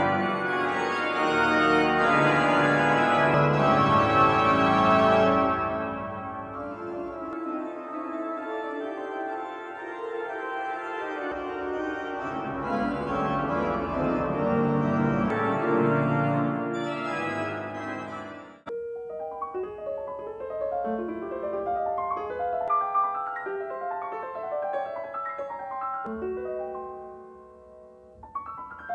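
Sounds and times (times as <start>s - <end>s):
organ-like keyboard chords: 0.0s - 9.9s, 11.2s - 18.7s
piano notes: 0.0s - 28.9s.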